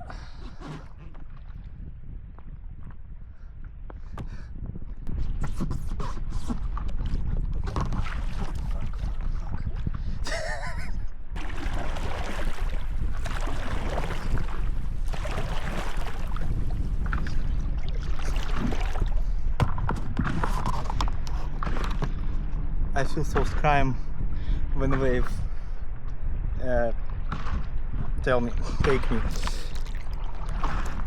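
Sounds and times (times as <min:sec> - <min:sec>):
wind buffeting microphone: 0:00.0 - 0:31.0
water splashing: 0:05.6 - 0:09.8, 0:11.4 - 0:21.9, 0:28.6 - 0:31.0.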